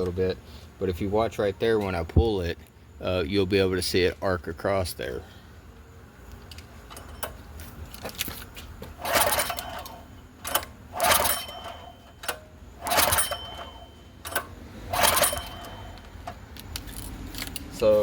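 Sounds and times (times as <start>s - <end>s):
recoil starter pull whir: 6.5s - 17.6s.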